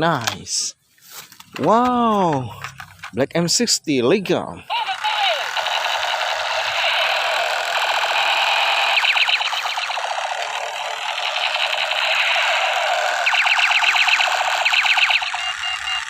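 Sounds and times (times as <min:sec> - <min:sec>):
electronic toy machine-gun buzzing: 0:04.7 - 0:16.0
rapid clattering firing bursts: 0:05.1 - 0:15.6.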